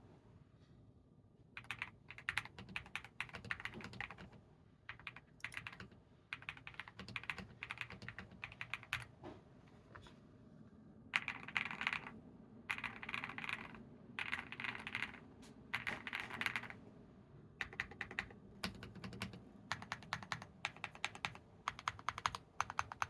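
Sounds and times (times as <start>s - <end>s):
mechanical keyboard typing: 1.6s - 9.1s, 11.2s - 15.2s, 15.8s - 16.8s, 17.6s - 23.0s.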